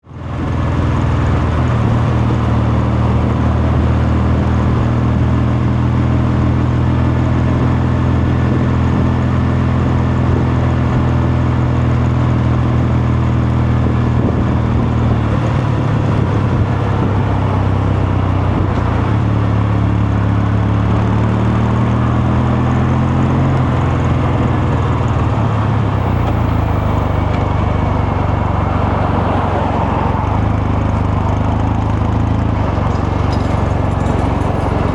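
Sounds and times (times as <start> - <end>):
motorcycle engine running: 8.4 - 34.9.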